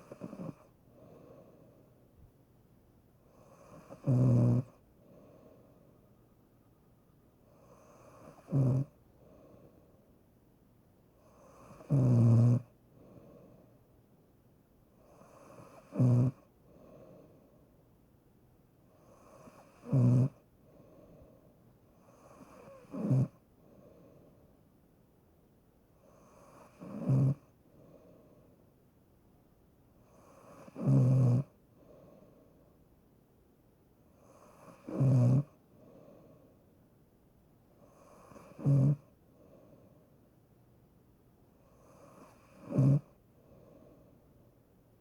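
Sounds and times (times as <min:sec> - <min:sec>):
soft breath: 0:00.0 - 0:02.4, 0:04.7 - 0:10.3, 0:12.7 - 0:14.2, 0:16.4 - 0:17.9, 0:20.4 - 0:22.8, 0:23.4 - 0:24.9, 0:27.5 - 0:28.8, 0:31.6 - 0:32.9, 0:35.5 - 0:36.8, 0:37.7 - 0:40.4, 0:41.5 - 0:45.0.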